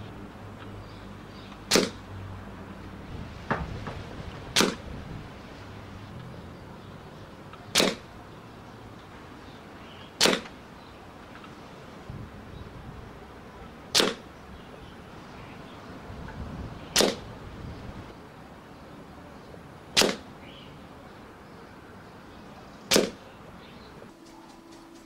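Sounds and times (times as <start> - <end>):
air rifle shots cracking: 1.7 - 2.0, 4.5 - 4.9, 7.6 - 8.1, 10.2 - 10.6, 13.9 - 14.3, 16.9 - 17.3, 19.9 - 20.3, 22.9 - 23.2.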